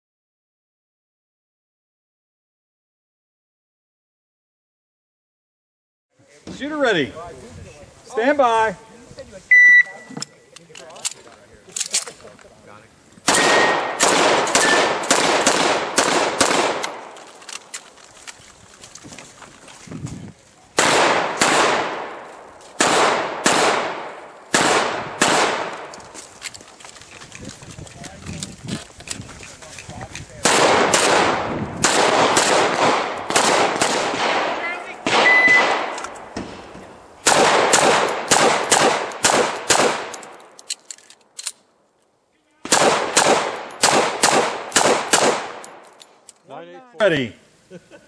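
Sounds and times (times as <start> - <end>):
pistol shots with echo: 13.3 - 17.2, 20.8 - 22.2, 22.8 - 25.9, 30.4 - 40.2, 42.6 - 45.8.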